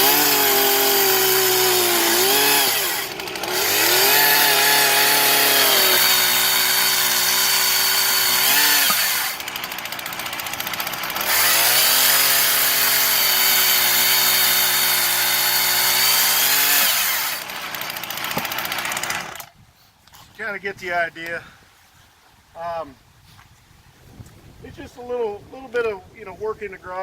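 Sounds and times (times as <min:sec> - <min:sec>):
chainsaw at full throttle: 0:00.0 - 0:19.5
chainsaw cutting firewood: 0:00.0 - 0:19.6.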